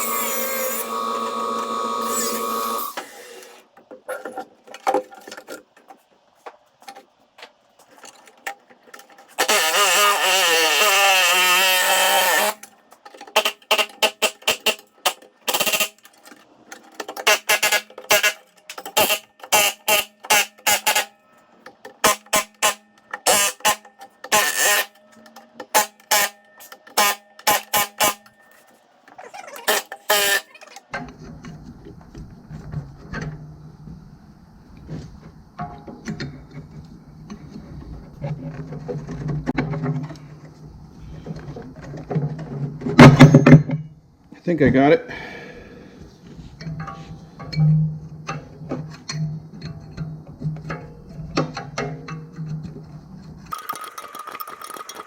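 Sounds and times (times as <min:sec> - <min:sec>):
power tool whining: 0:00.0 - 0:03.6, 0:09.3 - 0:12.7, 0:13.3 - 0:16.1, 0:17.2 - 0:21.1, 0:22.0 - 0:25.0, 0:29.6 - 0:30.5.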